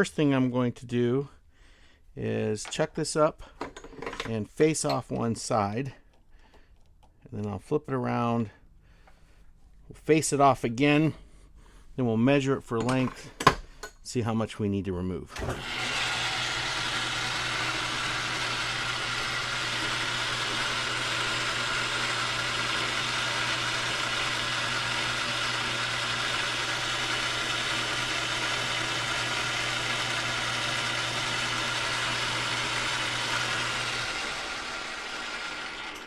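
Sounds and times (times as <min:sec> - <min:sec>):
lathe motor hum: 0:15.4 - 0:36.0.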